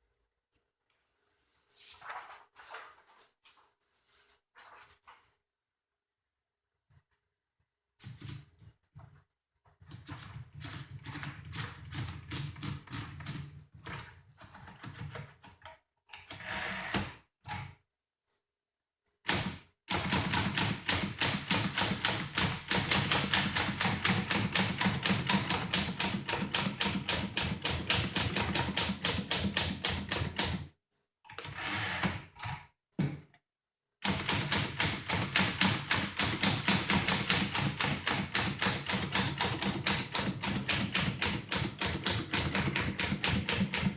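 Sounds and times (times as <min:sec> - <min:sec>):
typewriter keystrokes: 0:10.0 - 0:15.3, 0:19.3 - 0:30.6, 0:34.0 - 0:43.9
typewriter mechanical sounds: 0:19.3 - 0:30.6, 0:34.0 - 0:43.9.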